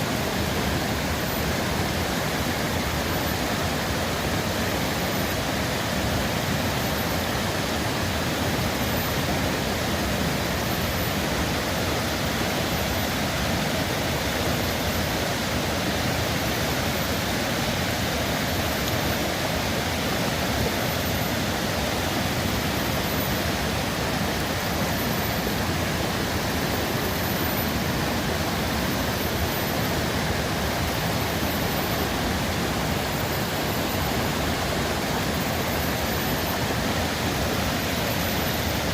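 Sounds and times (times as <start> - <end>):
running water rushing: 0.0 - 38.9.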